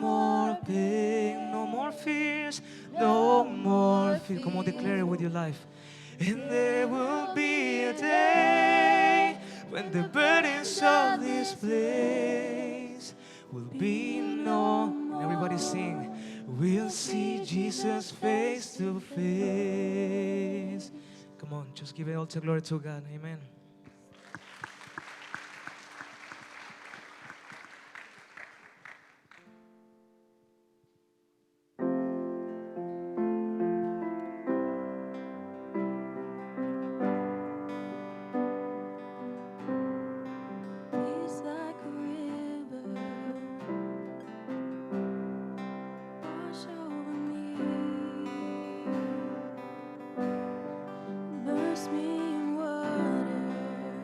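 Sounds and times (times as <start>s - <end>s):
acoustic guitar strumming: 0.0s - 21.2s, 32.4s - 54.0s
piano playing slow chords: 0.0s - 21.7s, 31.8s - 54.0s
congregation clapping: 24.1s - 29.6s.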